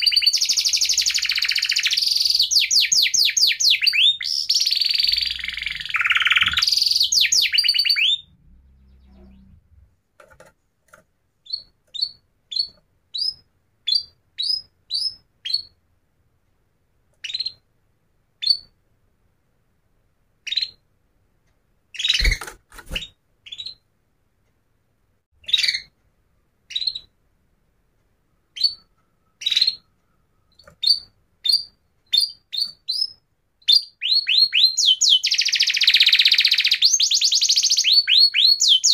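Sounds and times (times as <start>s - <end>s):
bird chirping: 0.0s - 10.5s, 11.4s - 15.8s, 17.1s - 17.7s, 18.4s - 18.8s, 20.4s - 20.9s, 21.9s - 23.9s, 25.4s - 27.2s, 28.2s - 38.9s.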